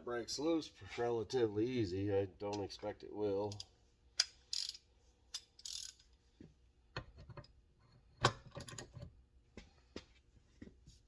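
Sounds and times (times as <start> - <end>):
socket wrench clicking: 3.5 - 6.0.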